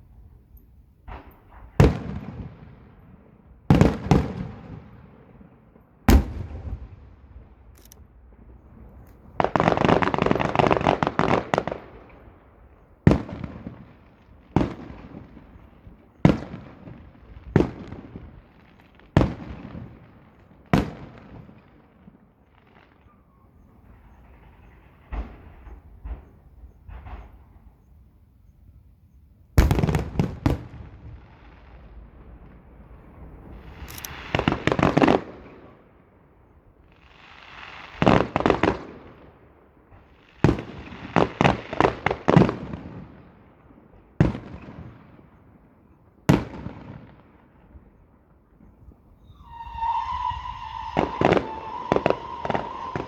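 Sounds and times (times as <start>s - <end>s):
firework bangs: 1.0s - 3.0s, 5.8s - 12.4s, 23.8s - 27.8s, 29.6s - 35.9s, 49.2s - 53.0s
firework crackling: 29.6s - 35.4s, 49.3s - 53.0s.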